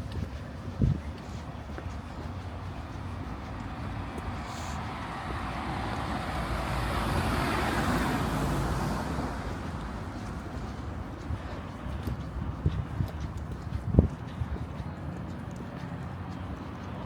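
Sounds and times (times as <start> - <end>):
car passing by: 3.5 - 11.1.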